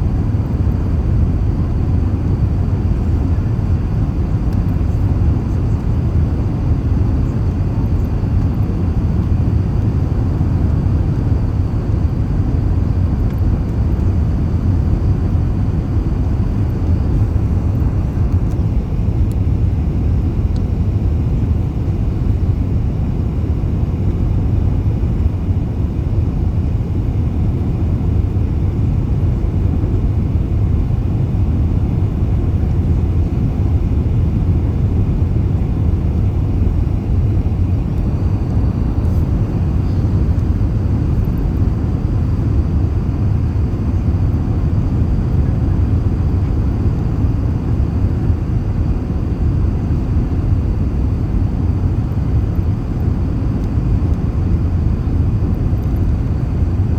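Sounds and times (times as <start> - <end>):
airliner engines roaring: 0.0 - 56.9.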